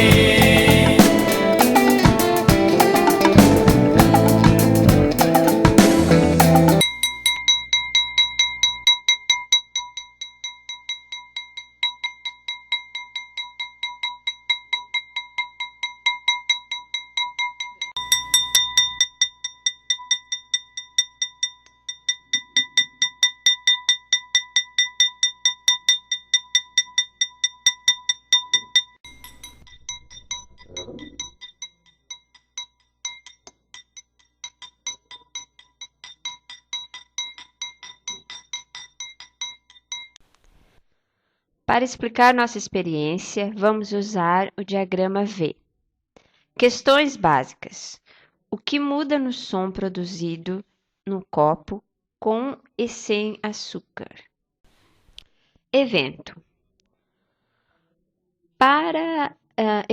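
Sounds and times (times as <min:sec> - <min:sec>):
spoon clinking in glass: 0:06.8 - 0:40.2.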